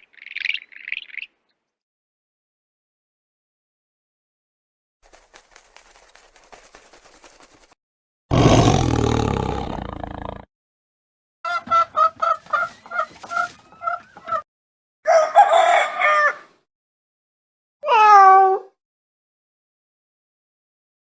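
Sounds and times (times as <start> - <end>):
hen clucking: 11.5 - 14.4
rooster crowing: 15.1 - 16.5.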